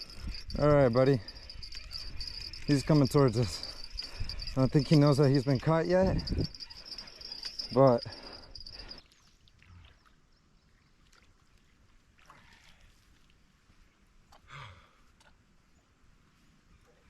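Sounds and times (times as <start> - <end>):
crickets chirping: 0.0 - 9.0
faint ticks and rustles: 0.0 - 9.1.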